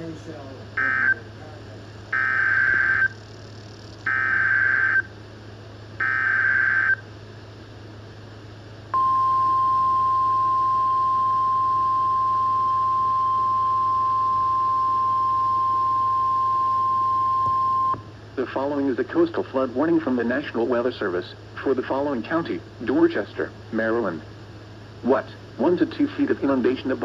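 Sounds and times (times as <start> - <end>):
steady attention tone: 0.0 - 5.2, 6.0 - 7.1, 8.9 - 18.8
warbling digital data bursts: 2.1 - 5.1, 6.0 - 7.0.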